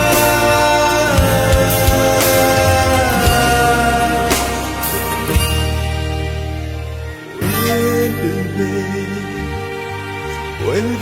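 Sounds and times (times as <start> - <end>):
drum hits: 0.0 - 6.1
instrumental song music: 0.0 - 11.0.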